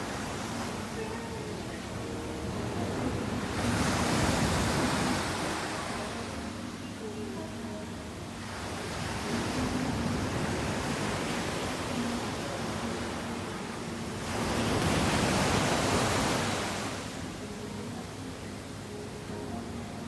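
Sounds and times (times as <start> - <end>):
ocean waves breaking: 0.0 - 7.4, 8.1 - 20.0.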